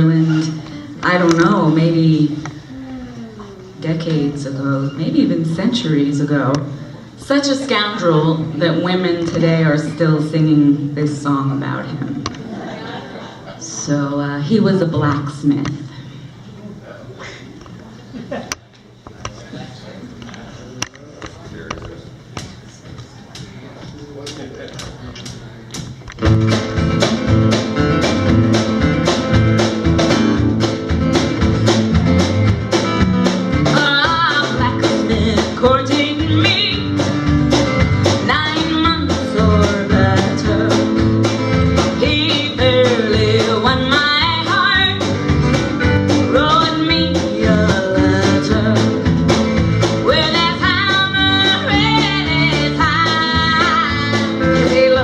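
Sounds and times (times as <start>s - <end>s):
live band playing: 0.0s - 16.5s, 24.7s - 55.0s
steady beat: 22.3s - 55.0s.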